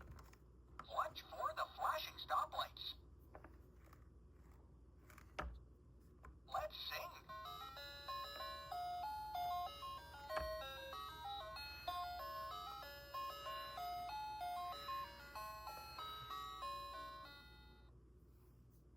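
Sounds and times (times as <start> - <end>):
toy electronic melody: 6.8 - 17.9.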